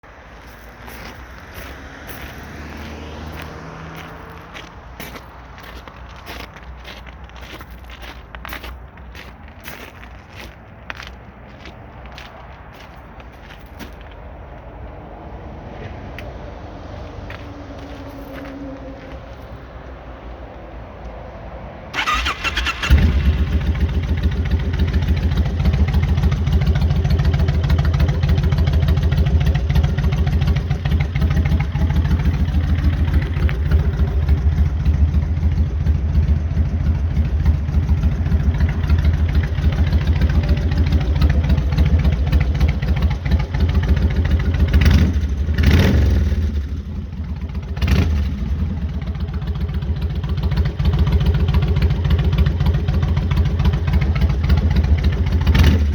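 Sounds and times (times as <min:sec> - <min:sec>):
motorcycle engine idling: 0:22.0 - 0:55.9.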